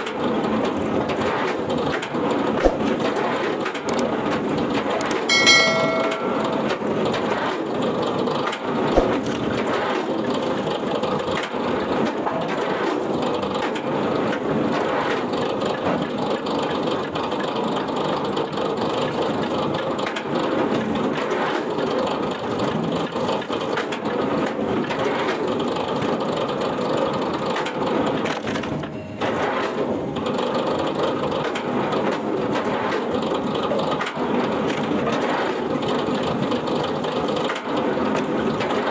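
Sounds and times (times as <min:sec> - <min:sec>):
short metallic ring: 0:05.3 - 0:07.0.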